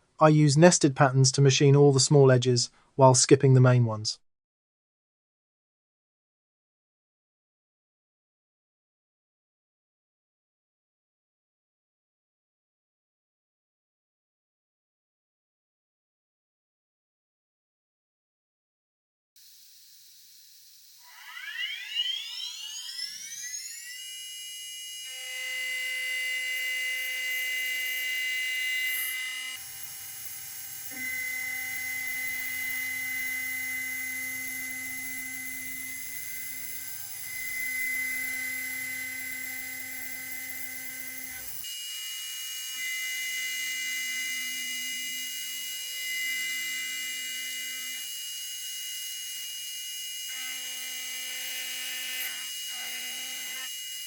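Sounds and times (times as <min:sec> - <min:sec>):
cnc router spindle whine: 0:19.4 - 0:54.0.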